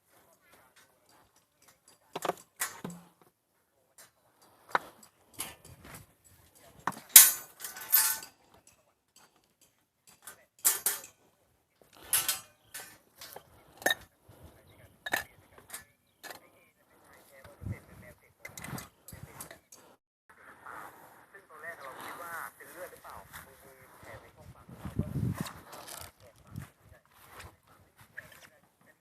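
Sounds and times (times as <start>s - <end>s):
objects knocking and clinking: 6.8s - 8.3s, 9.2s - 11.1s.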